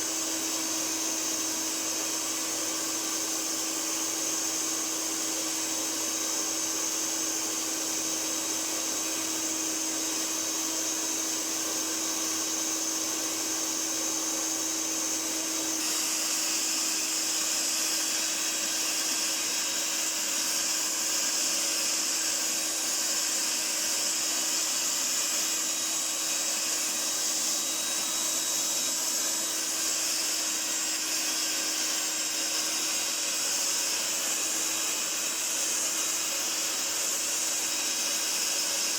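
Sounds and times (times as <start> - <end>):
vacuum cleaner running: 0.0 - 38.9.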